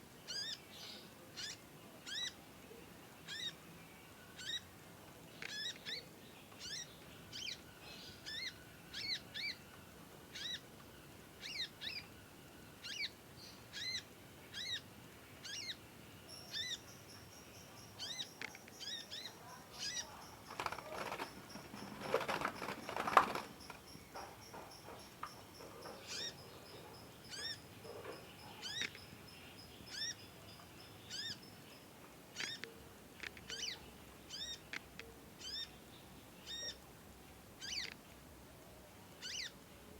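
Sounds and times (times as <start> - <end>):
songbird chirping: 0.0 - 39.9
rustling clatter: 20.4 - 26.1.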